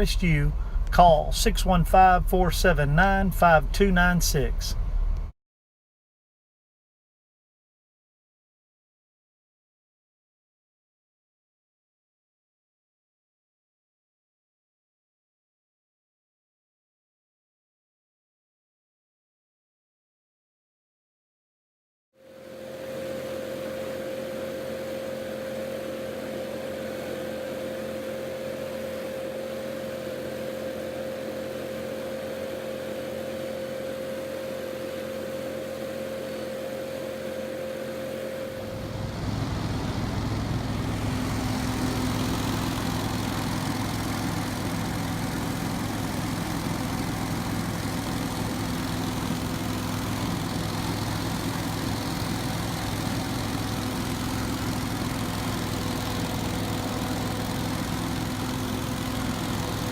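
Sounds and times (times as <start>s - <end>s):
debris blower running: 0.0s - 1.0s, 22.3s - 59.9s.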